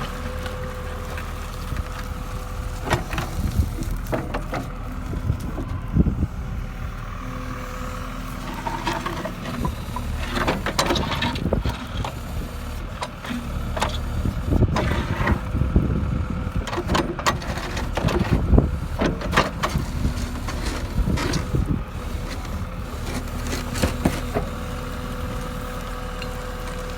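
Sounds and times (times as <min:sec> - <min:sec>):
diesel engine running: 0:00.0 - 0:26.9
concrete cracking and scraping: 0:16.8 - 0:24.5.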